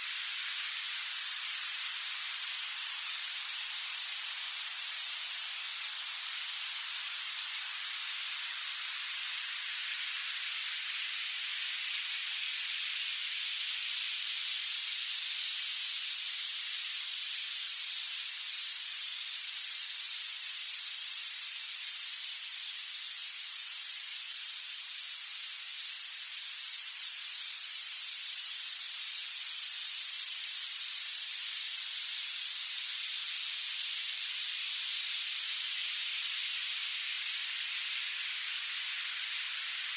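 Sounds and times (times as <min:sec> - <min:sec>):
high-pitched violet noise hiss: 0:17.0 - 0:39.9.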